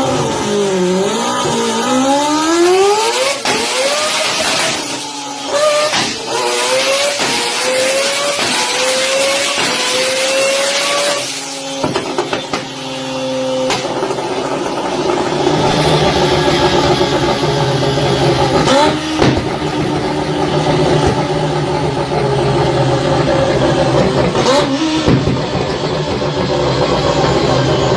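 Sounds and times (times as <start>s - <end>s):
rotary engine revving: 0.0s - 27.9s.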